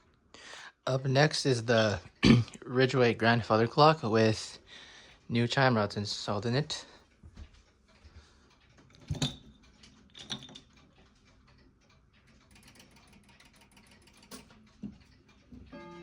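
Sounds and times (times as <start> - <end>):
faint room noise: 0.0 - 16.0
scattered clicks and knocks: 7.0 - 16.0.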